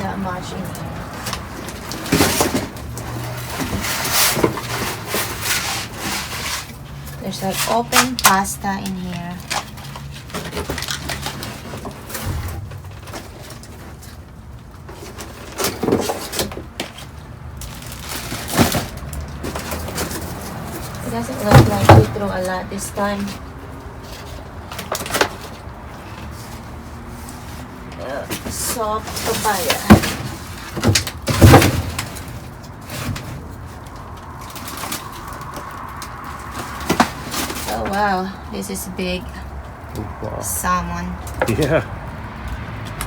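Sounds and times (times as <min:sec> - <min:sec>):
rustling handling noise: 0:00.0 - 0:40.2
knocks and thuds in dumpster: 0:12.0 - 0:13.6, 0:21.3 - 0:22.2, 0:28.5 - 0:33.4.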